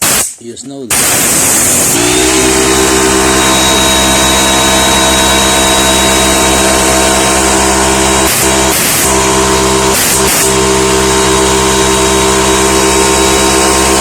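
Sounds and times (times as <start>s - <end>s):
air hissing: 0.0s - 7.4s, 8.2s - 11.3s
air compressor humming: 0.0s - 14.0s.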